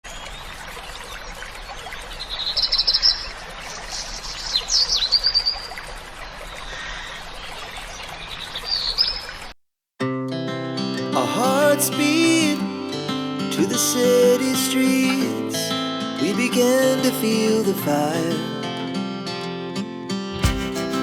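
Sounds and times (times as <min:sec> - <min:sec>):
songbirds singing: 0:00.0 - 0:09.5
song with guitar: 0:10.0 - 0:21.0.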